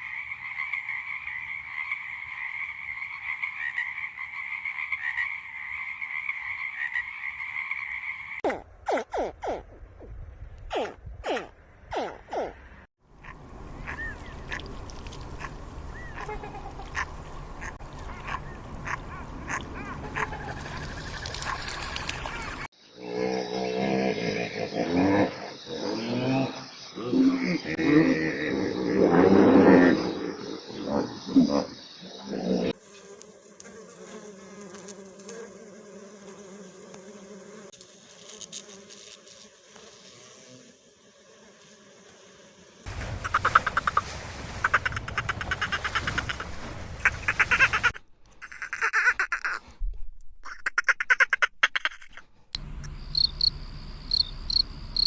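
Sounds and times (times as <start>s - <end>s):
ducks quacking: 15.4s - 22.7s, 42.9s - 48.0s
flying insect buzzing: 32.7s - 47.9s.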